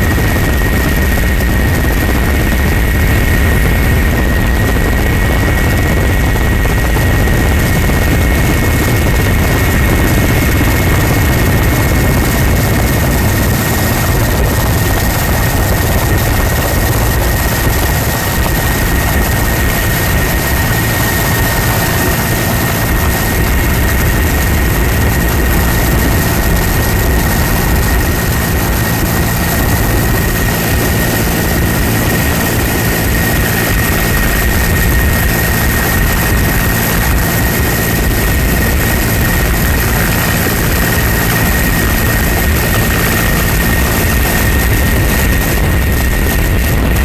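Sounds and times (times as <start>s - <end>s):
engine drone with thin whine: 0.0s - 47.0s.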